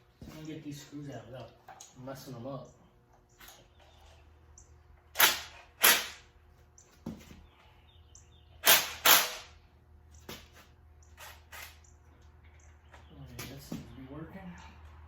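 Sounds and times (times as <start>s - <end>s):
low electrical hum: 0.0s - 15.0s
impact driver bursts: 5.1s - 6.3s, 8.6s - 9.6s.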